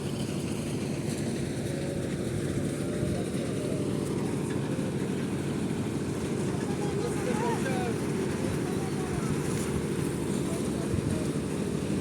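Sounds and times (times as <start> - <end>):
faint voices: 6.3 - 11.8.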